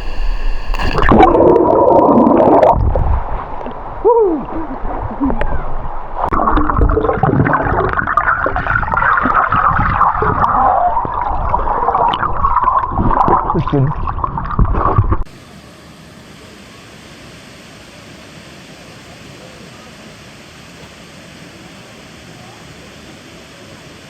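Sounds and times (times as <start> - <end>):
steady hiss: 0.0 - 1.1, 15.3 - 24.0
clicks and low rumbles: 0.0 - 15.3
water gurgling and splashing: 0.0 - 15.3.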